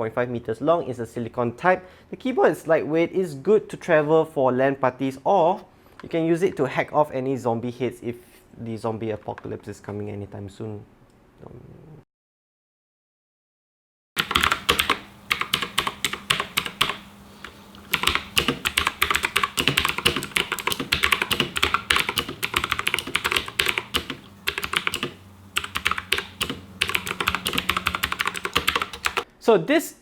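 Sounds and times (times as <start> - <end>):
mechanical keyboard typing: 14.2 - 29.3.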